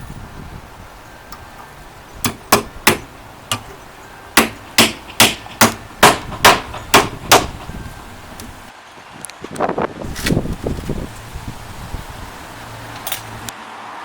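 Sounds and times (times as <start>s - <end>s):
hammer blows: 1.3s - 8.6s.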